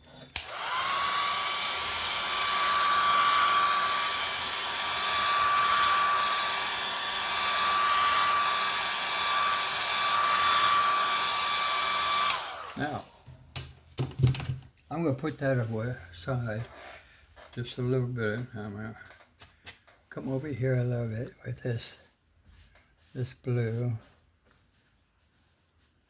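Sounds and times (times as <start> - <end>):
blow dryer motor whine: 0.3 - 13.1.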